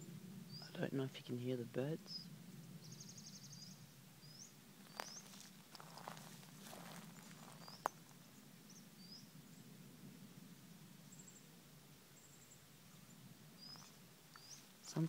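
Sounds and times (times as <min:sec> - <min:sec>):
birds chirping: 0:00.0 - 0:09.7, 0:12.2 - 0:15.0
low steady hum: 0:00.0 - 0:15.0
bird trills: 0:02.1 - 0:05.4, 0:07.4 - 0:08.1, 0:13.6 - 0:14.7.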